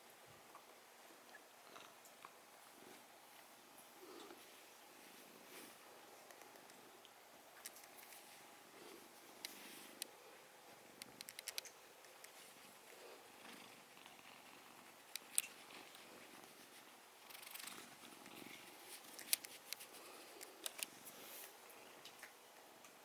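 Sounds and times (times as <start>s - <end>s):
small sharp clicks: 11.0s - 12.4s
cat purring softly: 12.4s - 19.1s.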